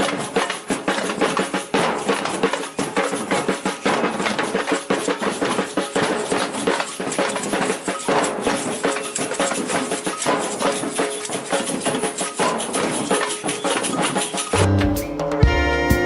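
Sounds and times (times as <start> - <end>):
samba drums and shakers: 0.0 - 16.0
music with heavy bass: 14.6 - 16.0.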